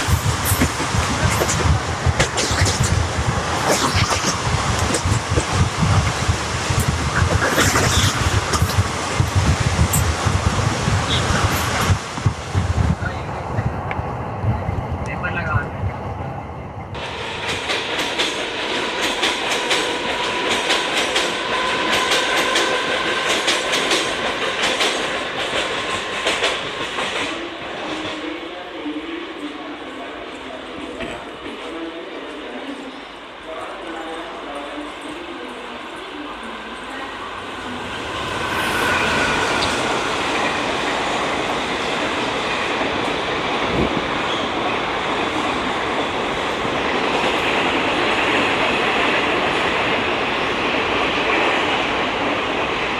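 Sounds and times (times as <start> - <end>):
train wheels clattering over rail joints: 0.0 - 12.2, 17.0 - 27.4
train passing on rails: 0.0 - 52.9.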